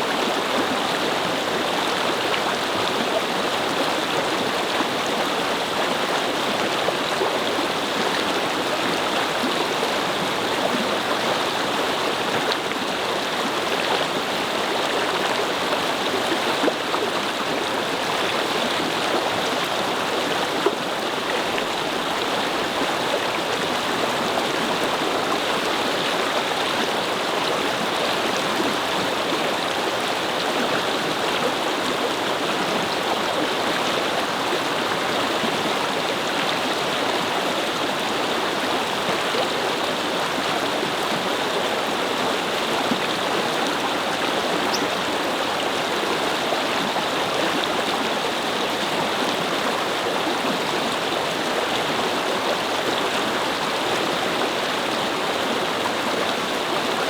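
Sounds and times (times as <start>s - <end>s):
brook babbling over stones: 0.0s - 57.0s.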